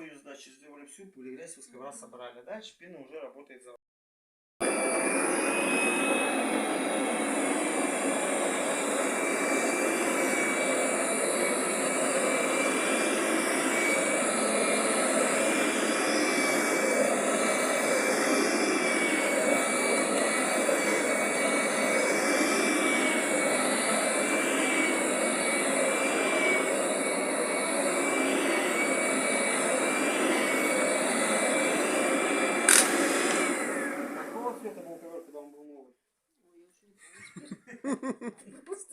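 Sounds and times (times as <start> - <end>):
vacuum cleaner running: 4.6 - 35.2.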